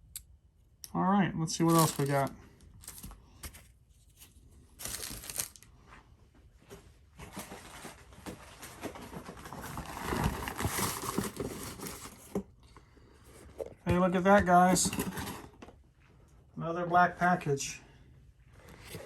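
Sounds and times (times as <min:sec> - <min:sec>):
packaging rustling and crinkling: 0:01.6 - 0:05.7, 0:07.2 - 0:12.4, 0:14.4 - 0:15.6.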